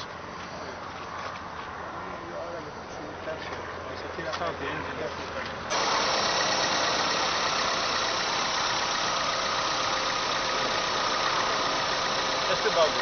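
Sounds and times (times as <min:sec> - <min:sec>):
car engine idling: 0:05.7 - 0:13.0.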